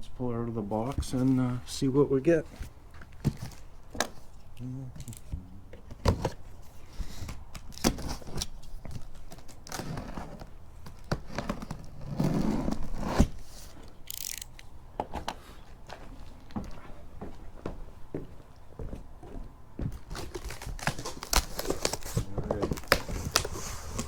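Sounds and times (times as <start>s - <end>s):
cardboard packaging knocks and scrapes: 19.9s - 24.0s
packaging rustling: 20.0s - 24.0s.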